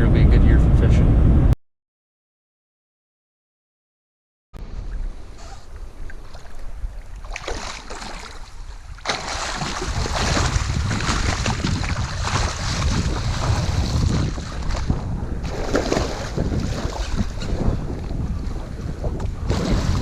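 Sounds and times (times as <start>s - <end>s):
wind blowing across microphone: 0.0s - 1.6s, 4.6s - 20.0s
water hissing around kayak: 4.7s - 9.4s.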